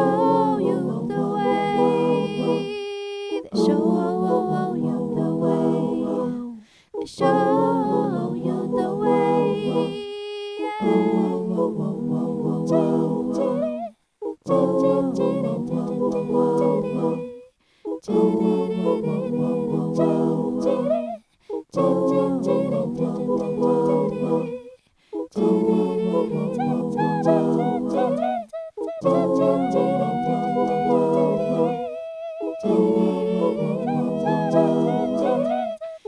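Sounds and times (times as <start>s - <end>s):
wordless layered singing: 0.0s - 36.0s.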